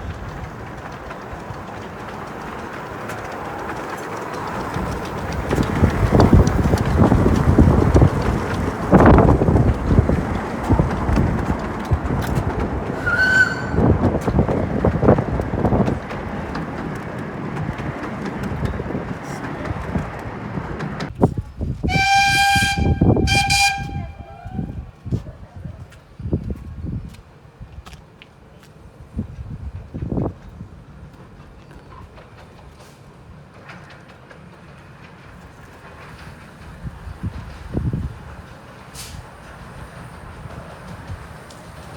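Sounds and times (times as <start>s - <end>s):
wheels clicking over rails: 0.0s - 24.8s, 29.4s - 41.9s
wind buffeting microphone: 0.0s - 27.9s, 28.9s - 32.2s, 35.5s - 41.9s
miniature train rumbling and clattering: 0.0s - 41.9s
short high train whistle: 13.0s - 14.1s, 21.9s - 24.8s.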